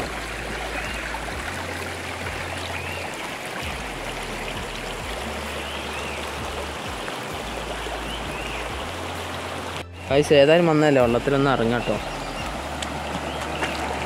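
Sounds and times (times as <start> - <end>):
small waterfall rushing: 0.0 - 14.0.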